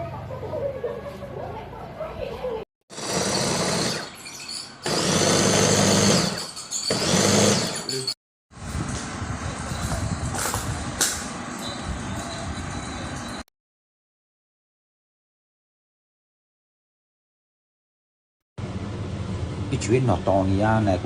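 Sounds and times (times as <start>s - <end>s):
food chopper motor whirring: 2.9s - 4.2s, 4.8s - 7.9s.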